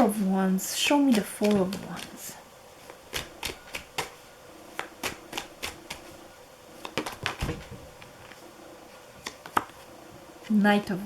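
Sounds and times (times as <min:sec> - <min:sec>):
cards being shuffled: 0:01.0 - 0:06.2, 0:06.8 - 0:08.4.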